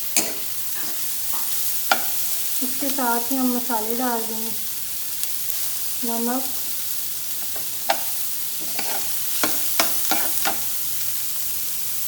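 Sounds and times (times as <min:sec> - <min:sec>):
spoon scraping a pan: 0:00.0 - 0:02.5, 0:07.3 - 0:10.8
vegetables sizzling in hot oil: 0:00.0 - 0:12.0.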